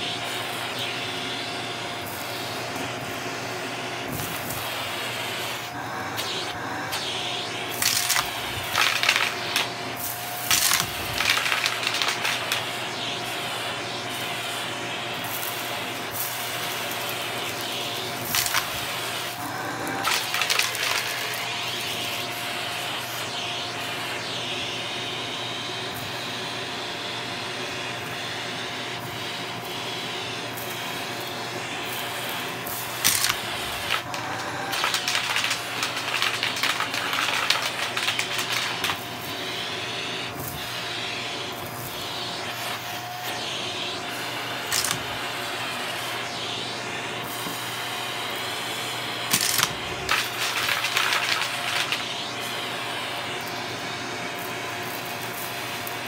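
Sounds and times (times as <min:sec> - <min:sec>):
vacuum cleaner motor whine: 0:00.0 - 0:56.0
clicks and crackles: 0:07.8 - 0:09.7, 0:10.4 - 0:12.6, 0:18.3 - 0:18.9, 0:33.0 - 0:39.1, 0:44.7 - 0:45.1, 0:49.3 - 0:52.1.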